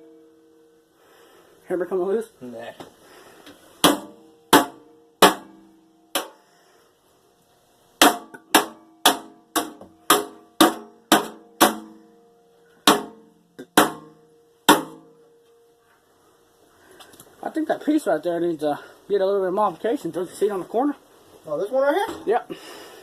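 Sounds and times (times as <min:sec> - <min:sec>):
hammer striking metal: 0:03.8 - 0:06.4, 0:08.0 - 0:12.0, 0:12.8 - 0:15.2.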